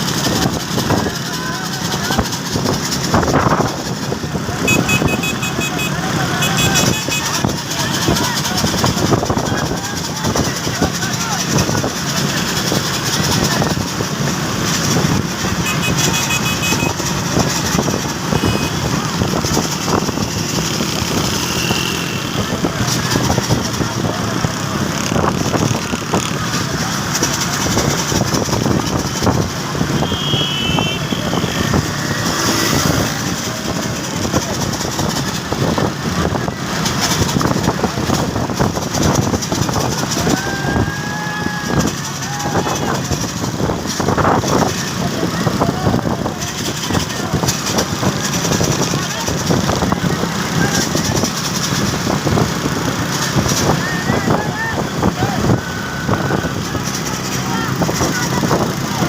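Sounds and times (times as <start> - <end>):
road noise: 0.0 - 59.0
vehicle engines running: 0.0 - 59.0
horn sounding: 4.6 - 7.6, 15.4 - 17.3, 18.2 - 19.1, 29.8 - 31.9.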